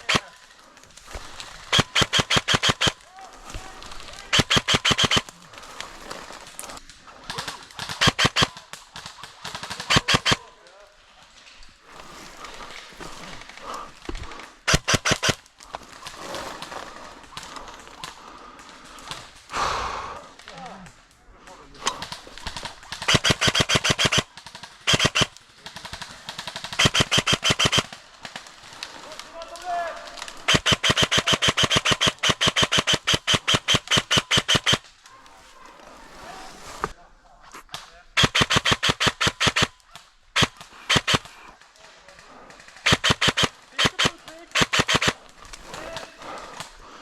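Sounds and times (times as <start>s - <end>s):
airsoft gun shots: 0.0s - 0.3s, 1.1s - 3.0s, 3.6s - 5.4s, 7.3s - 10.5s, 14.7s - 15.4s, 21.8s - 28.0s, 29.8s - 34.9s, 38.2s - 41.4s, 42.8s - 46.4s.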